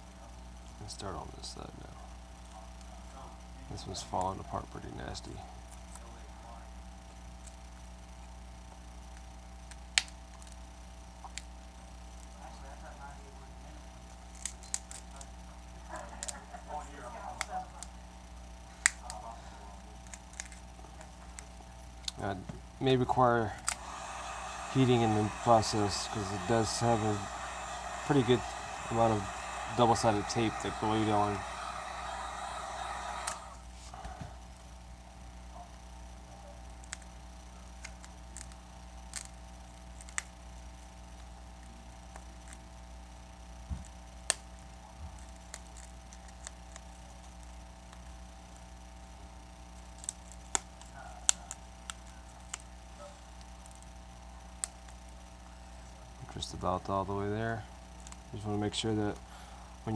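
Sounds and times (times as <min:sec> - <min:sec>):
steady low hum: 0:15.1 - 0:59.9.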